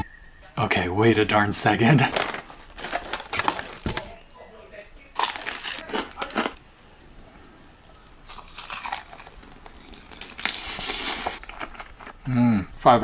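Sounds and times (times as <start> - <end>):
crunchy chewing: 5.2 - 12.2.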